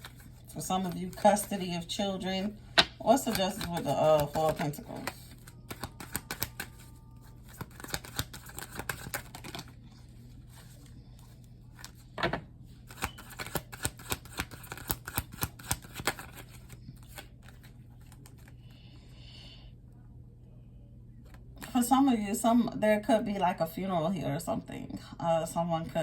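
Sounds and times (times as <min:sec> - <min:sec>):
cards being shuffled: 0:00.0 - 0:01.6, 0:02.8 - 0:12.2, 0:12.8 - 0:18.6
faint steady hum: 0:00.0 - 0:26.0.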